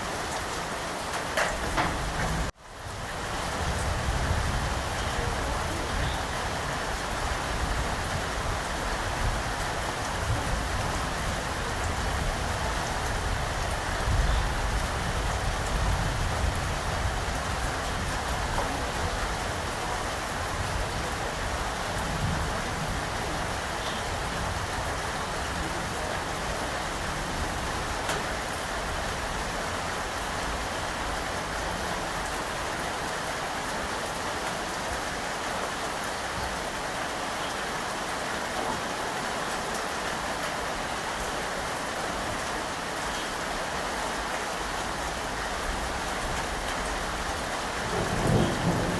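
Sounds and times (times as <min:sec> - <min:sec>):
steady rain falling: 0:00.0 - 0:48.9.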